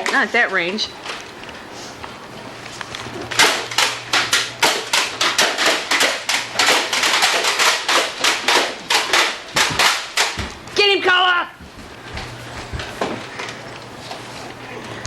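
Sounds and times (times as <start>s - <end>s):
toy gun firing foam darts: 3.3s - 10.5s.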